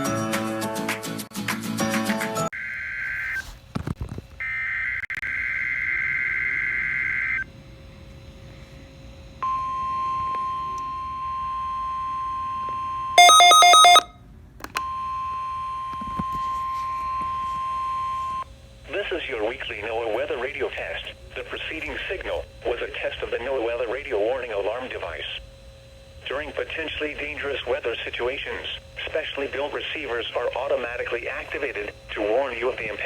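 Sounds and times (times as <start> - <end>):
steady alarm tone: 4.4 - 7.5, 9.4 - 14.2.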